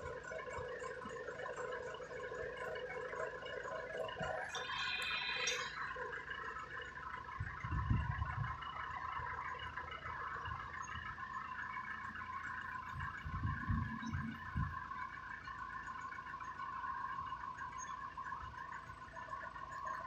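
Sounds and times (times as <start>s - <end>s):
backhoe engine droning: 0.0s - 20.0s
low rumble: 4.0s - 9.8s, 12.8s - 15.0s
high-pitched squeal: 4.2s - 6.3s.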